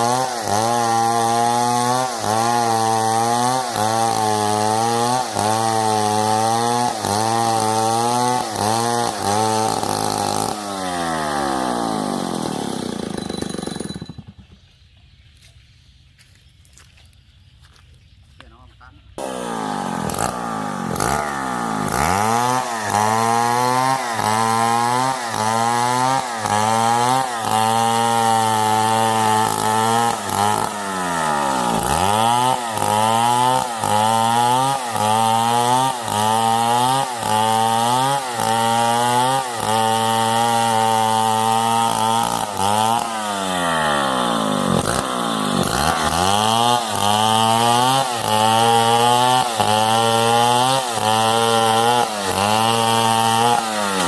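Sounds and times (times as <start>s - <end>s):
chainsaw cutting wood: 0.0s - 14.7s, 19.2s - 54.0s.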